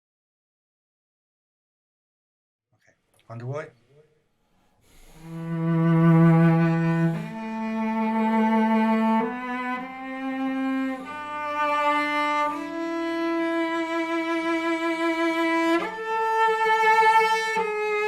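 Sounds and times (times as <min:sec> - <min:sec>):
bowed string instrument: 0:04.9 - 0:18.0.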